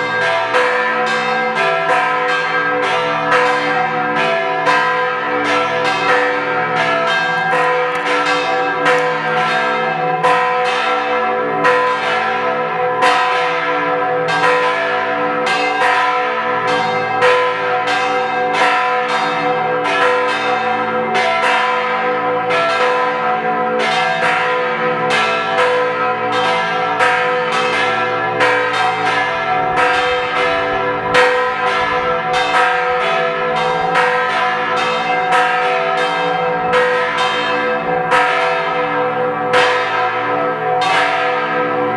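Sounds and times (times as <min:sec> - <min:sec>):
church bell ringing: 0:00.0 - 0:41.9.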